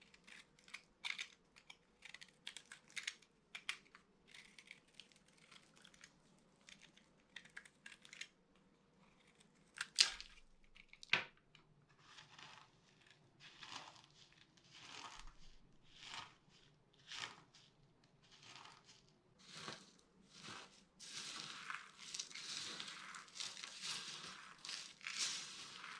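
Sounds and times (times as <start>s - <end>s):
bar soap crunching and crumbling: 0.0s - 8.4s, 9.0s - 25.9s
soft scraping crunches: 9.0s - 25.9s.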